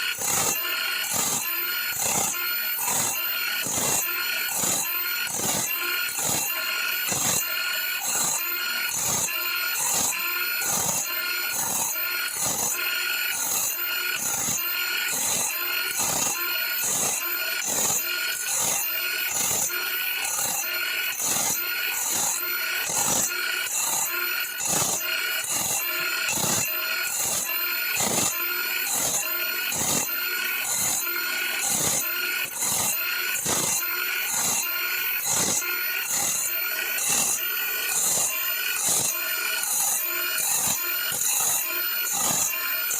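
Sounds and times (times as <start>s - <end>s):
grinding stone rasping on saw blade: 0.0s - 42.9s.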